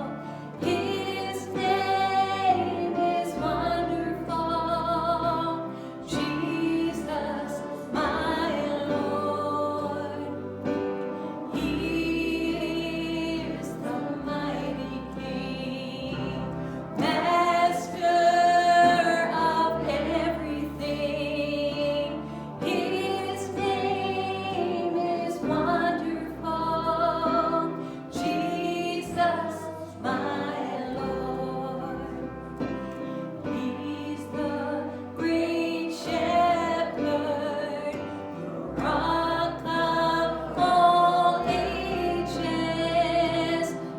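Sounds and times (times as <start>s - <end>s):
congregation singing: 0.0s - 43.9s
instrumental accompaniment with bass: 0.0s - 43.9s.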